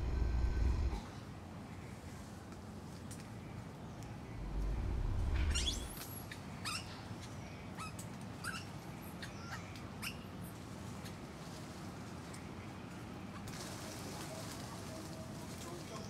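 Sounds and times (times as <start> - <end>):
low rumble: 0.0 - 1.2, 4.2 - 6.1
high chirping calls: 4.4 - 6.0.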